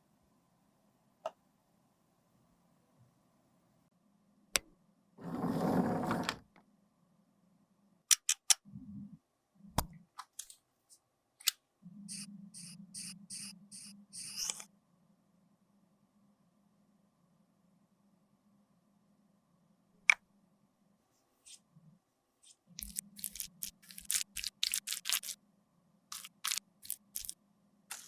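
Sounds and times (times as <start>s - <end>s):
rustling scrape: 5.2s - 6.3s.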